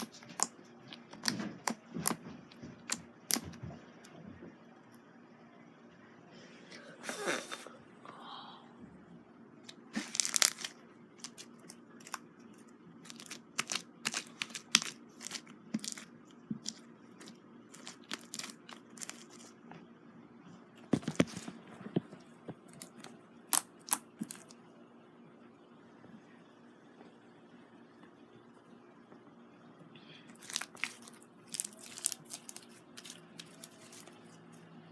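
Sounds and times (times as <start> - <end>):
slime popping and crackling: 0.0 - 2.2, 9.7 - 12.2, 13.0 - 19.5, 22.7 - 24.5, 30.4 - 34.2.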